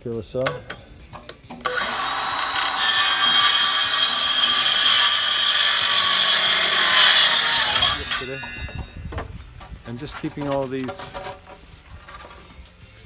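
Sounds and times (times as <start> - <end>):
circular saw cutting wood: 1.6 - 8.9.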